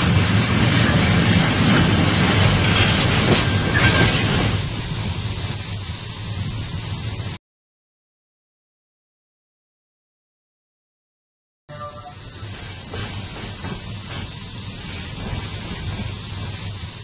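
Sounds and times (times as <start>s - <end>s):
rough rushing brake noise: 0.0s - 5.9s.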